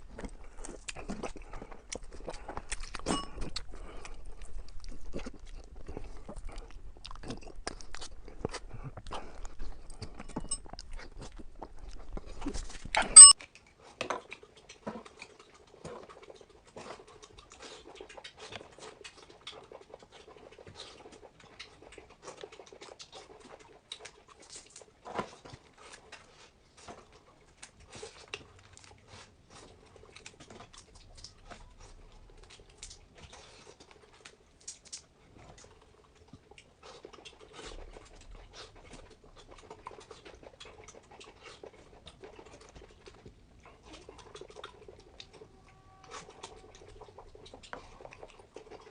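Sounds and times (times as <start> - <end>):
chewing and mouth noises: 0.0 - 48.9.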